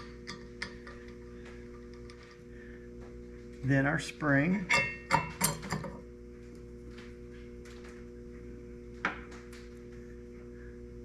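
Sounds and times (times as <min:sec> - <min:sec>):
background hum: 0:00.0 - 0:11.0.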